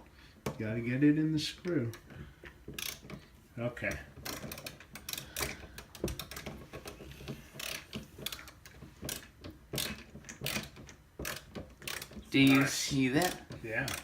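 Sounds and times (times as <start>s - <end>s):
ratcheting screwdriver clicking: 7.5s - 14.0s.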